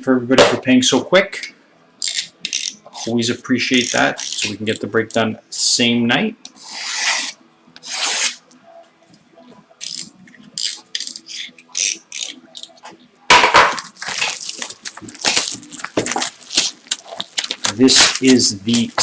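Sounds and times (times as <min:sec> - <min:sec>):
packaging crinkling and tearing: 0:13.8 - 0:19.0.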